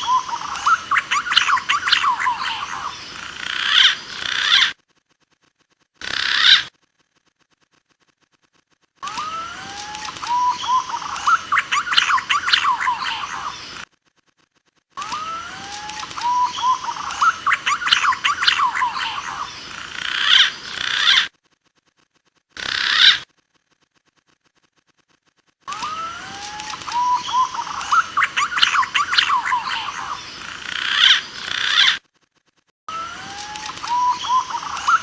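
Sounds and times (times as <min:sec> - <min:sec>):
pigeon calls with sliding whistles: 0:25.7 - 0:30.2, 0:32.9 - 0:35.0.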